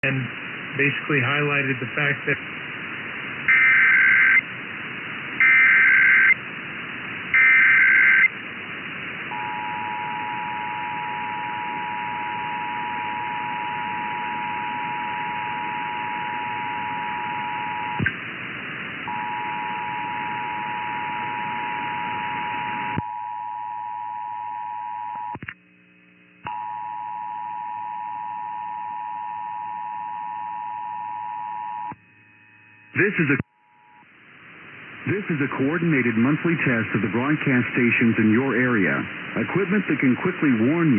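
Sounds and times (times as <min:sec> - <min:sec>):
radio hiss: 0:00.0 - 0:23.0, 0:32.9 - 0:40.9
harsh data bursts: 0:03.5 - 0:04.4, 0:05.4 - 0:06.4, 0:07.4 - 0:08.3.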